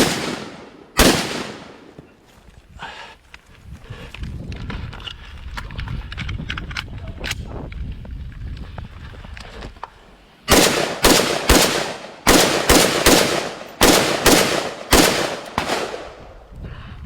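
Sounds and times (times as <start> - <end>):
gunshots with echo: 0.0 - 1.9, 10.5 - 16.3.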